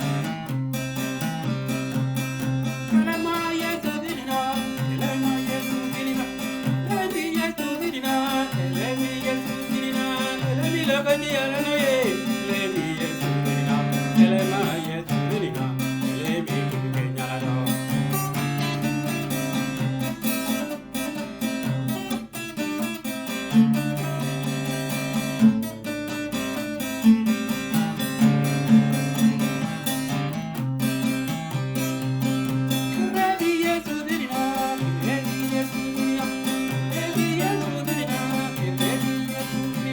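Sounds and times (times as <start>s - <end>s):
acoustic guitar: 0.0s - 39.9s
person singing: 2.6s - 21.6s, 32.6s - 39.9s.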